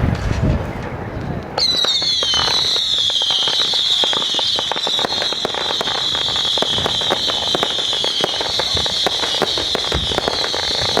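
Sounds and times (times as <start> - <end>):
firework crackling pops: 0.0 - 11.0
firework whistle: 1.6 - 11.0.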